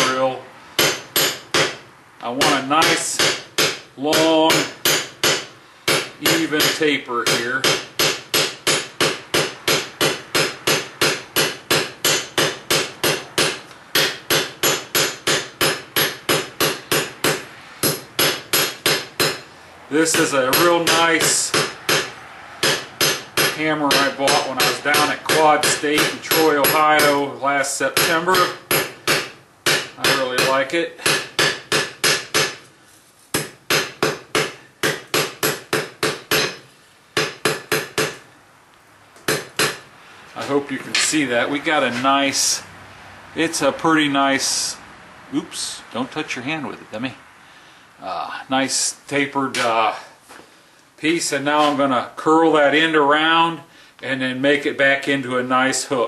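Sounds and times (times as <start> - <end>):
hammer striking steel on anvil: 0.8 - 1.8, 2.4 - 19.5, 20.1 - 27.2, 27.9 - 32.6, 33.3 - 38.2, 39.3 - 39.8.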